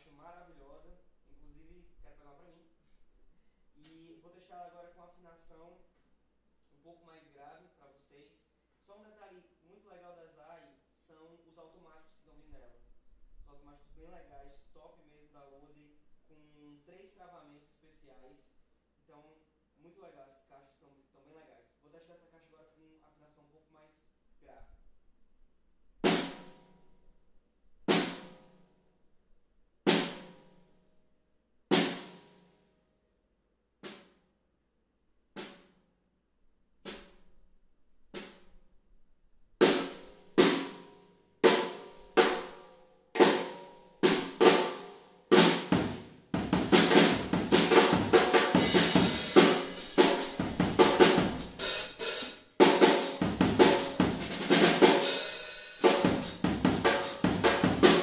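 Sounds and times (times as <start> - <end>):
cymbals: 39.7 - 58.0
bass drum: 43.2 - 52.0, 52.6 - 55.0, 55.8 - 58.0
snare drum hits: 46.8 - 52.0, 55.8 - 58.0.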